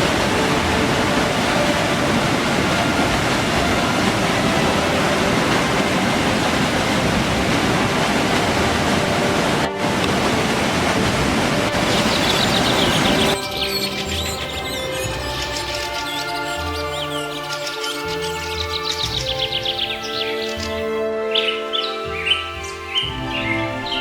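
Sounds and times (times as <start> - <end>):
steady rushing noise: 0.0 - 13.5
background music: 0.0 - 24.0.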